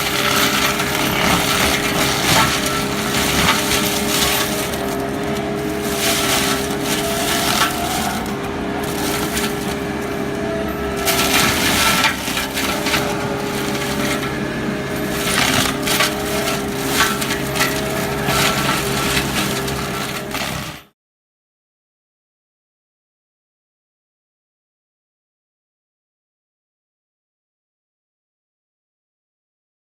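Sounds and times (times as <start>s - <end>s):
mulching rotor droning: 0.0s - 20.6s
wood crushing and splintering: 0.0s - 20.9s.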